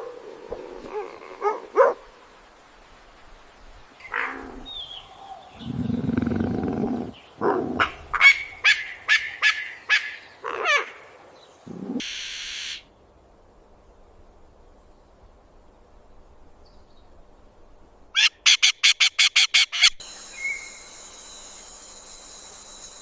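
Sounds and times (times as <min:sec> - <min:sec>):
bird calling repeated notes: 0:18.2 - 0:21.5.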